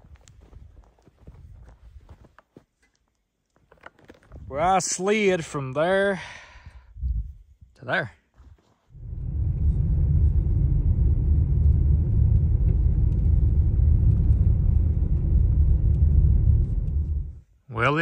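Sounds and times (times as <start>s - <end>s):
vehicle driving through deep snow: 9.0s - 17.4s.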